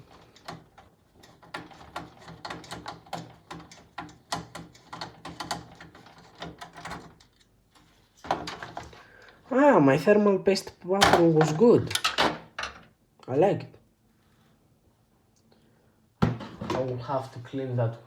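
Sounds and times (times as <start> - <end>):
computer parts clicking and knocking: 0.0 - 9.0, 11.0 - 12.9.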